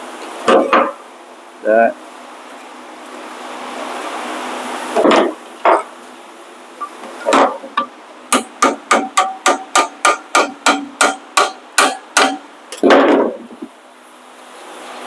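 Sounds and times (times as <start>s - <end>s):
hammer striking metal: 7.3s - 13.3s.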